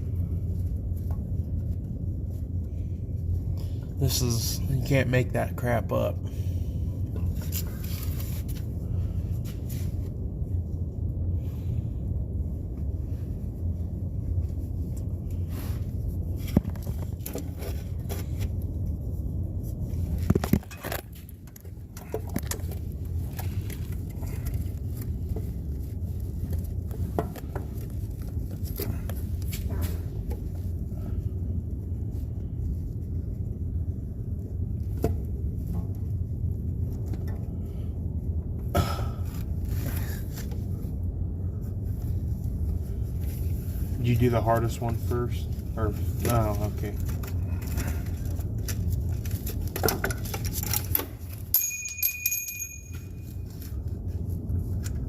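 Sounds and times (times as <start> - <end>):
steady low hum: 0.0 - 55.0.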